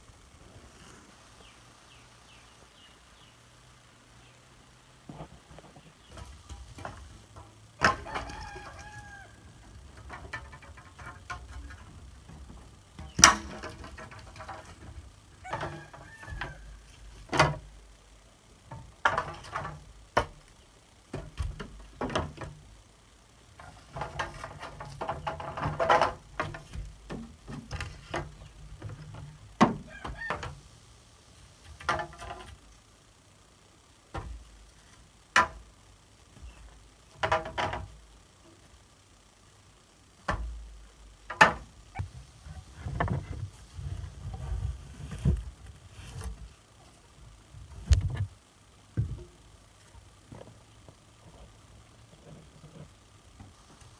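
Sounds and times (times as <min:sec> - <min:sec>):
rooster crowing: 0:07.8 - 0:09.8, 0:15.4 - 0:17.0, 0:29.8 - 0:30.6.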